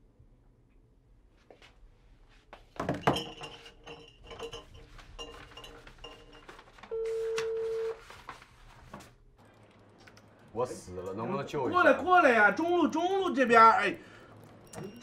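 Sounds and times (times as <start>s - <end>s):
telephone ring-back tone: 6.9s - 8.0s
bright clinking chimes: 14.6s - 15.0s.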